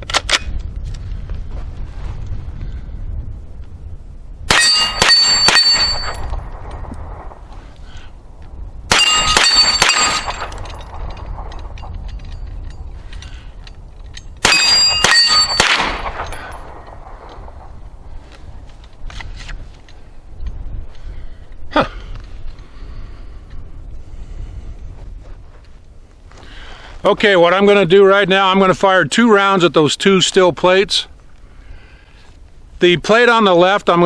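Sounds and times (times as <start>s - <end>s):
steel target plates clanging: 4.5s - 6.4s, 8.9s - 12.9s, 14.1s - 16.7s.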